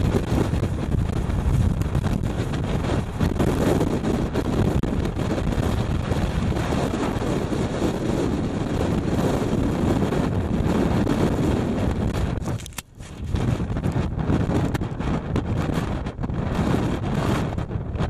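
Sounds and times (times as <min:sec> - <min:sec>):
blizzard wind buffeting microphone: 0:00.0 - 0:18.0.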